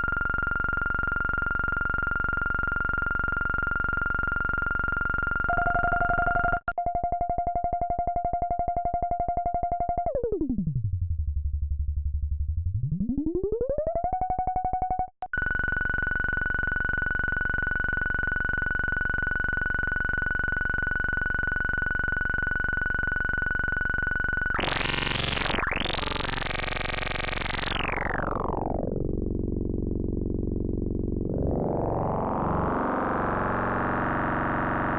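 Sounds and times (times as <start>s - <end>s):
synthesizer buzzing drone: 24.5s - 34.9s.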